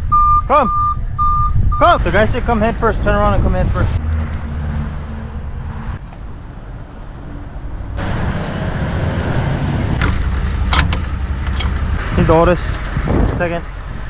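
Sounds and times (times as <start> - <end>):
truck engine running: 5.2 - 14.0.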